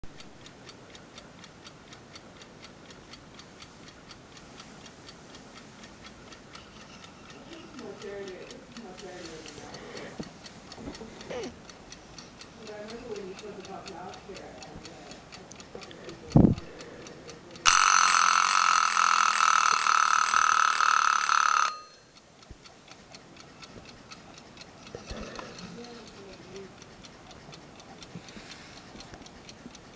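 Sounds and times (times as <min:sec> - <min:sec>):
alarm clock ticking: 0:00.2 - 0:29.9
alarm clock ringing: 0:17.6 - 0:22.2.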